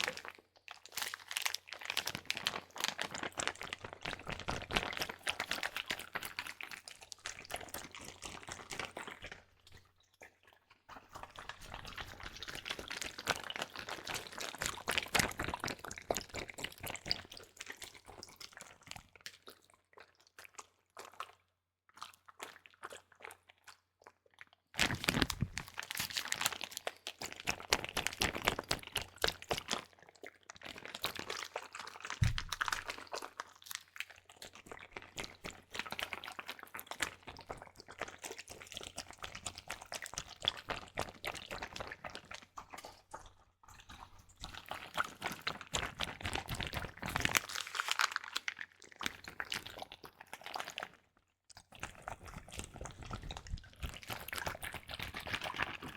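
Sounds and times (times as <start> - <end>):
liquid squishing: 0.0 - 55.9
plastic bag crinkling: 24.8 - 27.0, 32.2 - 33.0.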